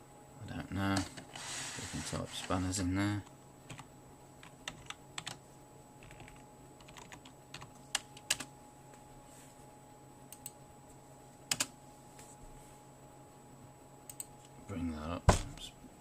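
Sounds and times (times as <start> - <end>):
faint electrical hum: 0.0 - 16.0
keyboard keys clicking: 6.0 - 8.5.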